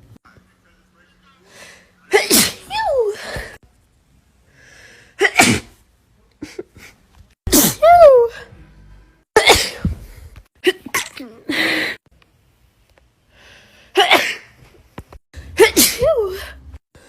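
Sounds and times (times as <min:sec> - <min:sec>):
woman sneezing: 0:02.1 - 0:03.4, 0:05.2 - 0:05.8, 0:07.5 - 0:08.0, 0:15.6 - 0:16.5.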